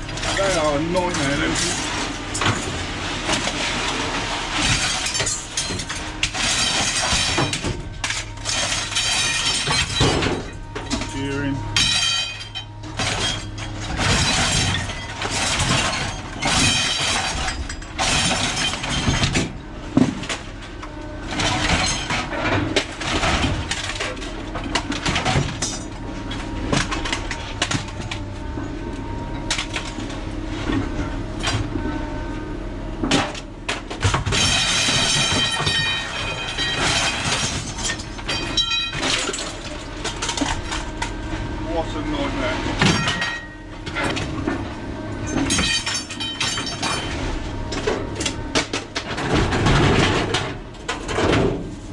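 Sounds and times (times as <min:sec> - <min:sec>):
scrap metal clanging onto pile: 0:00.2 - 0:20.4, 0:21.3 - 0:28.0, 0:33.0 - 0:41.1, 0:41.9 - 0:44.3, 0:45.2 - 0:51.9
low hum: 0:01.0 - 0:51.9.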